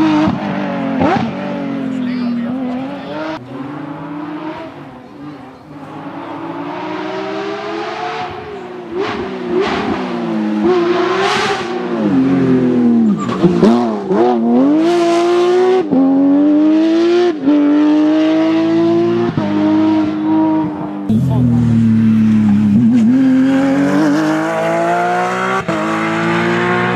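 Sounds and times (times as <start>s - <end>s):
car engine revving: 0.0s - 26.9s.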